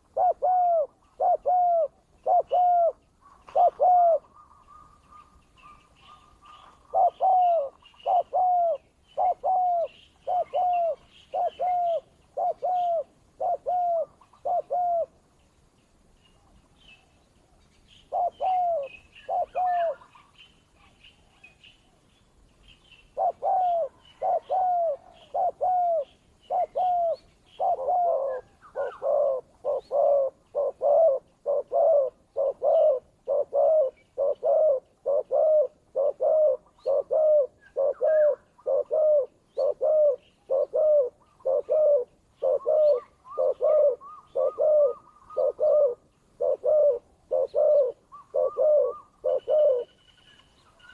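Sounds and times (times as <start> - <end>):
doves cooing: 0.0 - 15.2, 18.1 - 20.3, 23.2 - 50.0
small birds chirping: 0.0 - 50.9.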